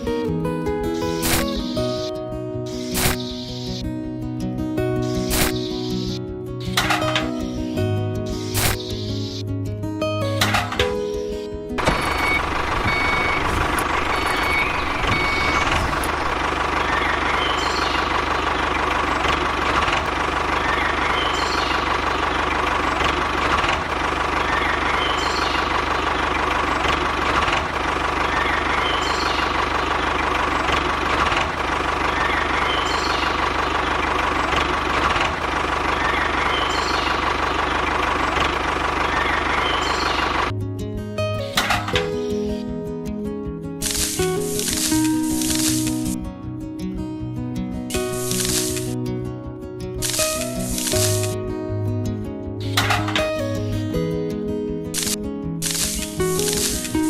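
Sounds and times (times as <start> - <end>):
small engine running: 0.0 - 3.8, 5.0 - 9.4, 10.4 - 40.5, 43.8 - 46.2, 47.9 - 49.0, 50.0 - 51.4, 55.0 - 57.0
faint high chirp: 11.8 - 18.1.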